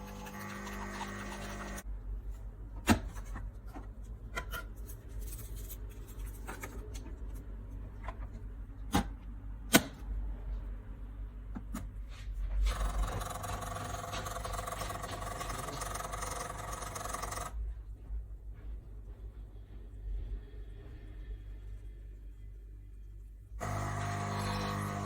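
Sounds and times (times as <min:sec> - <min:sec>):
pump buzzing: 0:00.0 - 0:01.8, 0:23.6 - 0:25.0
coffee machine low hum: 0:00.0 - 0:01.9, 0:23.6 - 0:25.0.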